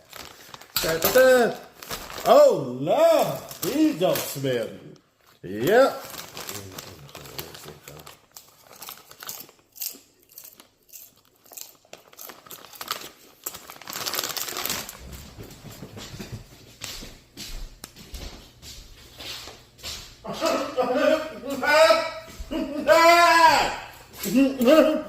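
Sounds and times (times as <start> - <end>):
snack bag crinkling: 0.0 - 2.4, 3.2 - 4.5, 5.6 - 15.3.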